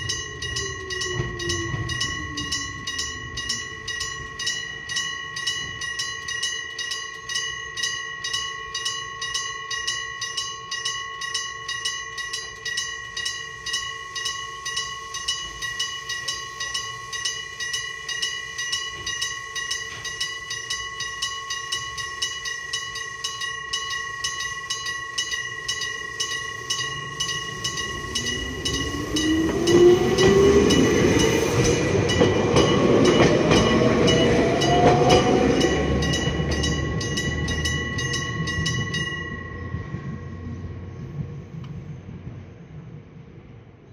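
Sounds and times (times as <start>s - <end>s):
level crossing bell ringing: 0.0s - 41.0s
electric train motor whine: 26.7s - 35.8s.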